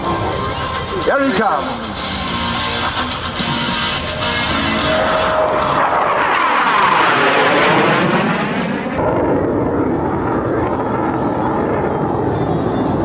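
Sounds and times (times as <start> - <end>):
jet fighter flying past: 3.3 - 13.0.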